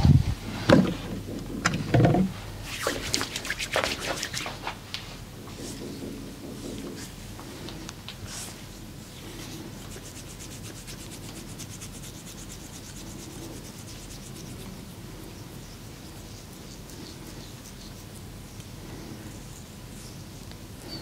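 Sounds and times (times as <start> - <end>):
hands rubbing in massage: 2.6 - 18.3.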